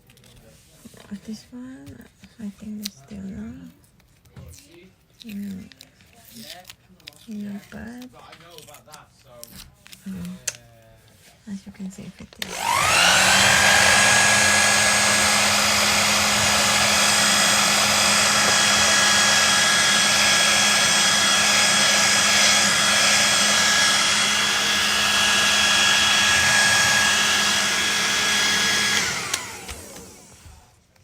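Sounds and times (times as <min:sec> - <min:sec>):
hair dryer running: 0:12.4 - 0:30.8.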